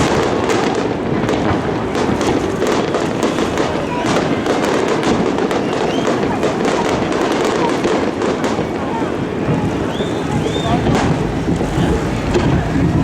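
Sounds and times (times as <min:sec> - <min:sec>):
fireworks bangs and crackling: 0:00.0 - 0:13.0.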